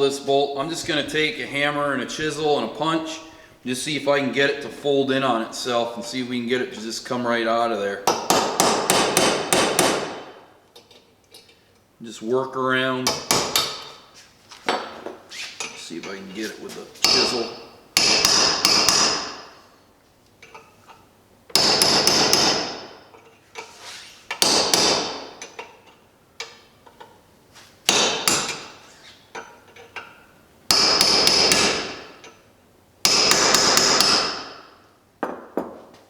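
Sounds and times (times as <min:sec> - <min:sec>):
hammer striking steel chisel: 0:08.1 - 0:10.4, 0:17.0 - 0:19.6, 0:21.6 - 0:23.0, 0:27.9 - 0:28.8, 0:30.7 - 0:32.2, 0:33.0 - 0:34.7.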